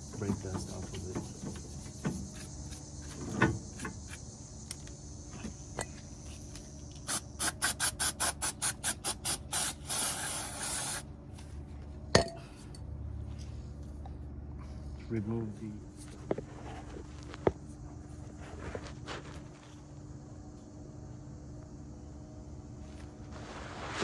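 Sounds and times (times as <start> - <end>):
wire brush scrubbing metal: 0.0 - 4.2.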